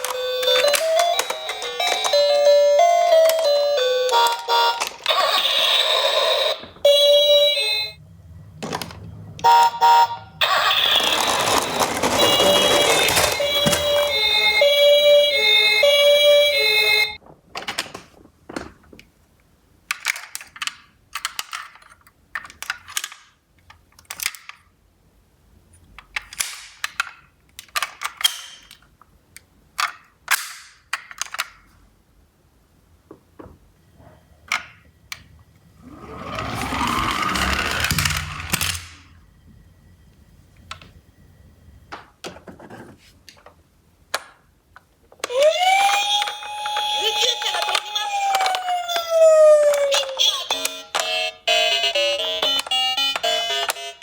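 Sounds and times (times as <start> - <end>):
two-tone ambulance siren: 9.4 - 17.2, 45.3 - 47.1, 48.0 - 50.2
toy cars clacking together: 10.4 - 14.6, 19.9 - 24.7, 26.0 - 29.0, 29.7 - 31.7, 35.9 - 39.1, 45.1 - 54.0.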